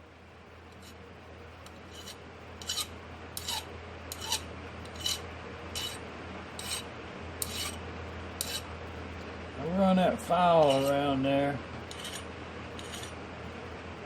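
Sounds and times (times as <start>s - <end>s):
file rasping on brass: 0.8s - 1.0s, 1.7s - 6.0s, 6.6s - 6.8s, 7.4s - 7.8s, 8.4s - 8.7s, 10.6s - 11.0s, 11.9s - 13.2s.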